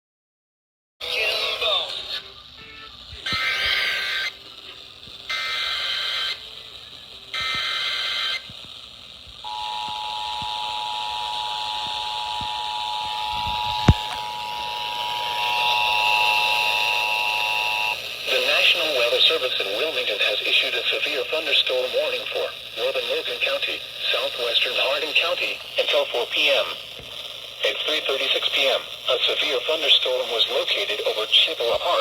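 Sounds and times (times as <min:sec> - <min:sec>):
radio hiss: 0:01.0 - 0:32.0
data tone bursts: 0:03.3 - 0:04.4, 0:05.3 - 0:06.4, 0:07.3 - 0:08.5, 0:09.4 - 0:19.4
two-tone attention signal: 0:09.5 - 0:18.0.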